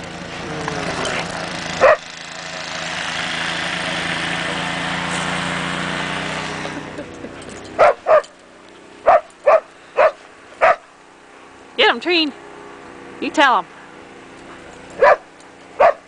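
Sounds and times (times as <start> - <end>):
dog barking: 1.8 - 2.0, 7.8 - 8.3, 9.0 - 10.9, 15.0 - 16.0.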